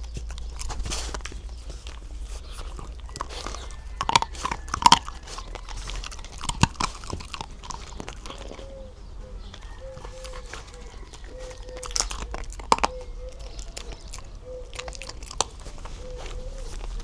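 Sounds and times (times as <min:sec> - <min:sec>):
puppy crunching hard treats: 0:00.0 - 0:17.0.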